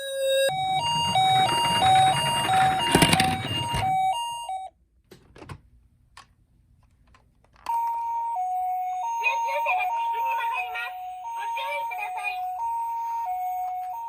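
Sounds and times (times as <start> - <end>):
toy electronic two-tone siren: 0.0 - 4.7, 7.7 - 14.0
rattling clatter and knocks: 0.6 - 4.1.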